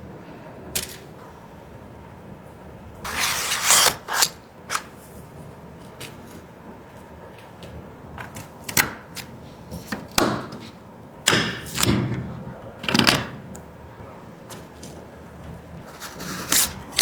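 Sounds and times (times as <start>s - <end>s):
scraping sliding sounds: 3.1s - 4.3s.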